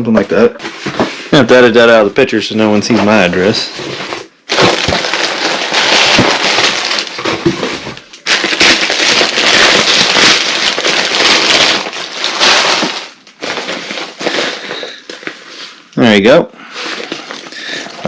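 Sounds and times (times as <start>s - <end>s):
packaging crinkling: 4.2s - 16.0s, 16.7s - 18.0s.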